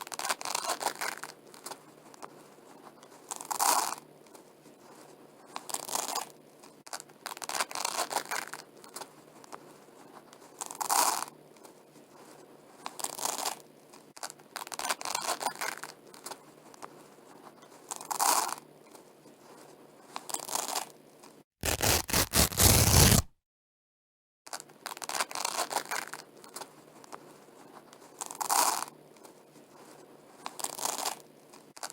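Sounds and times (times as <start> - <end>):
velcro ripping: 21.6 - 23.3.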